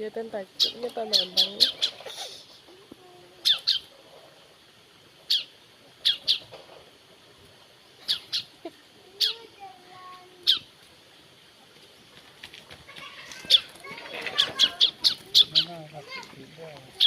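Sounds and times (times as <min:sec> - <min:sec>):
bird chirping: 0:00.5 - 0:02.5, 0:03.4 - 0:03.9, 0:05.2 - 0:06.6, 0:07.9 - 0:09.5, 0:10.4 - 0:10.7, 0:13.1 - 0:16.2.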